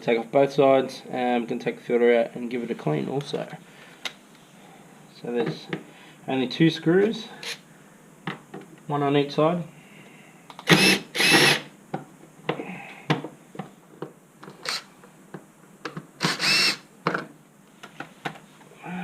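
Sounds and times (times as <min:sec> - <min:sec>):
cordless drill bursts: 0:10.6 - 0:11.7, 0:14.6 - 0:14.9, 0:16.2 - 0:16.8.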